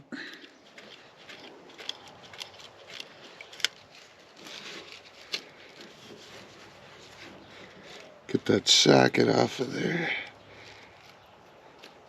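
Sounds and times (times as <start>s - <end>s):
socket wrench clicking and scraping: 0.4s - 6.2s.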